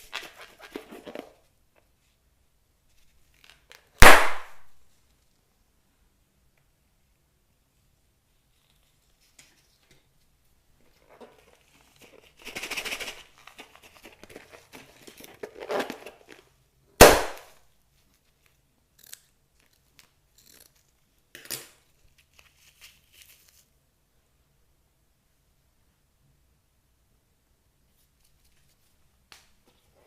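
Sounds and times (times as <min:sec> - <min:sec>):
sharp pop: 0:04.0 - 0:04.7, 0:17.0 - 0:17.5.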